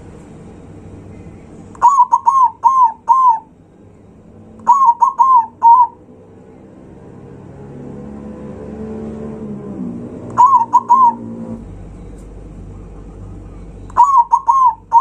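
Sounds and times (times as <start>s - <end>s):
dove cooing: 1.8s - 3.5s, 4.6s - 6.0s, 10.3s - 15.0s.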